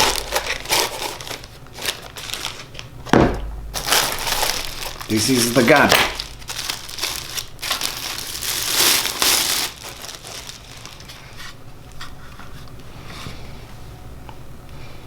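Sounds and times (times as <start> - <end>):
plastic packaging crinkling: 0.0 - 11.6.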